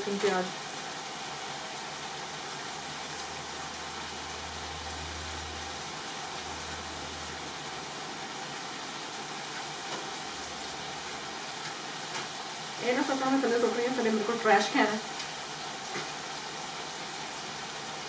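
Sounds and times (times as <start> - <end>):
chicken sizzling in a pan: 0.0 - 18.0.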